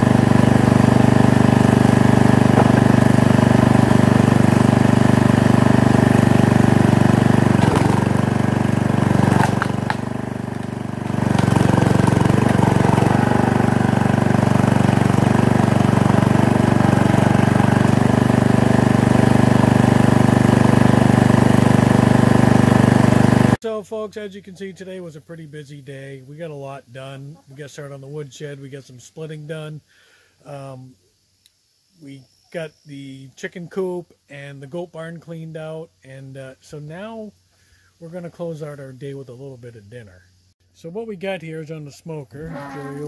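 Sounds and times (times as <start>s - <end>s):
engine running: 0.0s - 23.6s.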